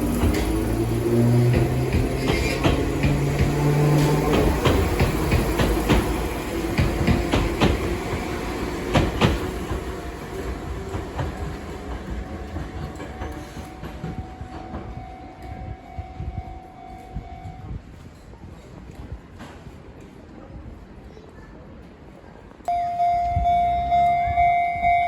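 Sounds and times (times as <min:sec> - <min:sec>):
train wheels clicking over rail joints: 0:00.0 - 0:16.3.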